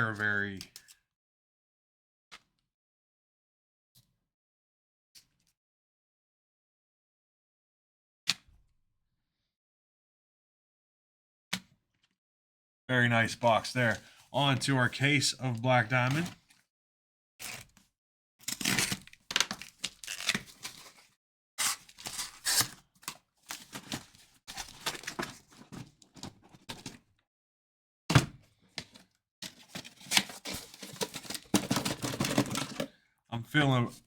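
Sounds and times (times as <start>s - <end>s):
plastic wrap tearing and crinkling: 18.7s - 21.0s, 21.6s - 22.8s
cardboard being handled: 23.5s - 26.9s, 29.4s - 32.9s
boxes knocking on surface: 30.9s - 32.9s.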